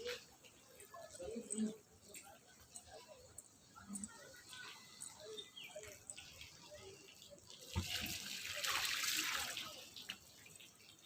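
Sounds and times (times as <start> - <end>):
water pouring onto plants: 4.6 - 11.0
water splashing: 6.1 - 11.0.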